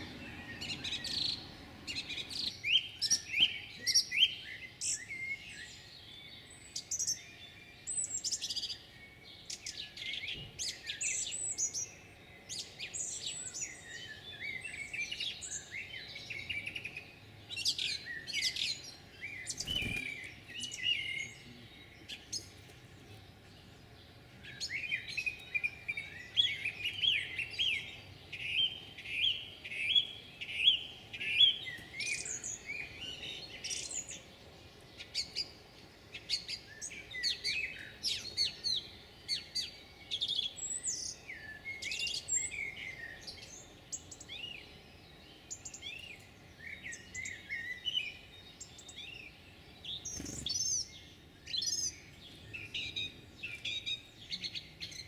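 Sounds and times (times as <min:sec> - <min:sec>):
songbirds chirping: 0:00.0 - 0:55.0.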